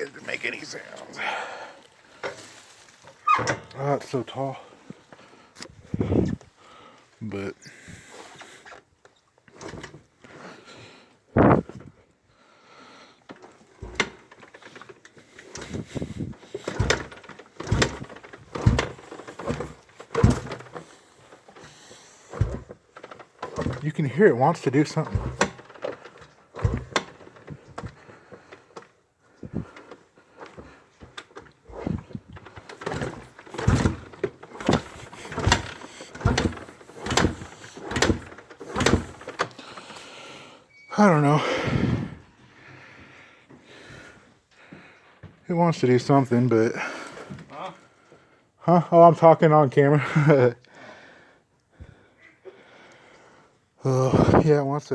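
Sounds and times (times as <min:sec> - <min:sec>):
motorcycle engine kick start thumps: 0:11.4 - 0:12.0, 0:13.3 - 0:40.0.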